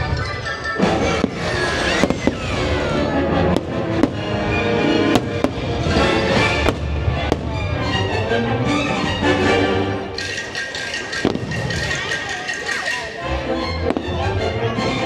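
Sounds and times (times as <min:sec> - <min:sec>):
loud music: 0:00.0 - 0:15.0
fireworks bangs: 0:01.0 - 0:04.5, 0:05.1 - 0:07.8, 0:11.2 - 0:12.0.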